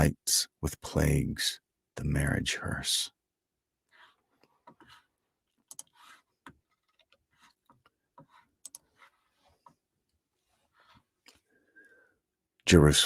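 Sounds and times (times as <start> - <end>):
soft rustles: 3.9 - 11.5
small clicks: 5.6 - 6.0, 8.6 - 8.9.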